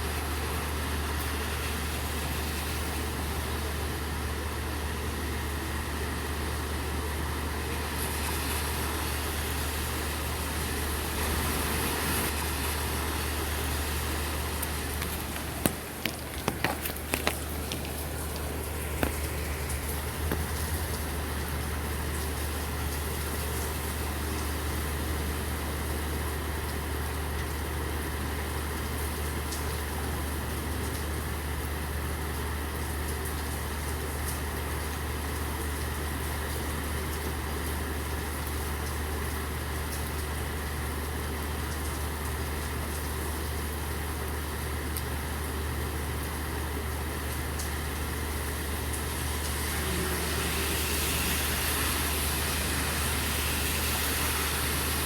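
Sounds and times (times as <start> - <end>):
steady rain: 0.0 - 55.0
vehicle engine idling: 12.3 - 29.3
sharp drips ticking: 12.3 - 55.0.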